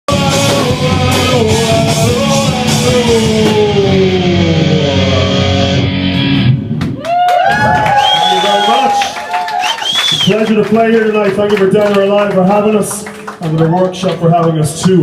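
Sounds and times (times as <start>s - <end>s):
live rock band playing: 0.1s - 7.0s.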